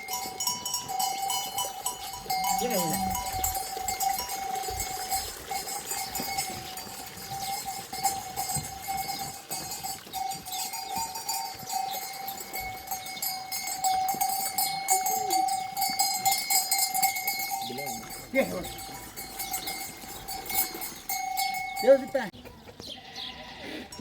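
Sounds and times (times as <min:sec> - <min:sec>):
animal bells clanking: 0:00.0 - 0:24.0
faint bleat: 0:22.9 - 0:24.0.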